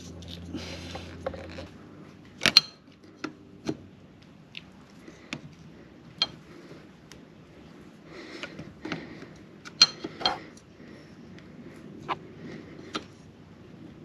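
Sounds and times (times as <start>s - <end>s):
low hum: 0.0s - 8.2s.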